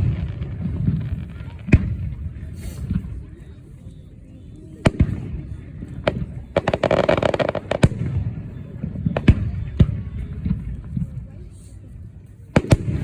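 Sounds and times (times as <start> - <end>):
fireworks bangs: 0.0 - 3.3, 4.8 - 11.1, 12.6 - 13.0
fireworks crackling: 0.0 - 3.6, 4.8 - 11.8, 12.4 - 13.0.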